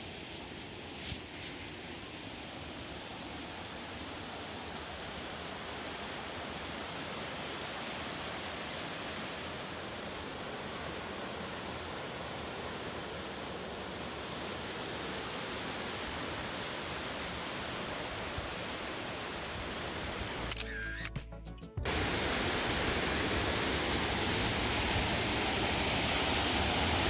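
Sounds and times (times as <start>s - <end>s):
waterfall rushing: 21.9s - 27.0s.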